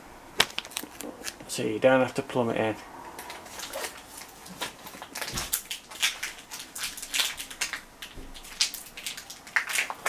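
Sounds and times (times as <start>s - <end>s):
plastic crinkling: 0.4s - 1.5s, 3.2s - 10.0s.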